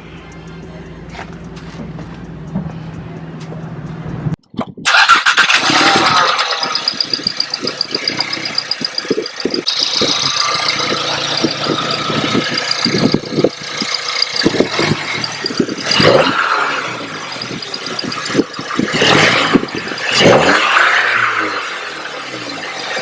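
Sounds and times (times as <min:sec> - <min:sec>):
car engine starting and idling: 0:00.0 - 0:23.0.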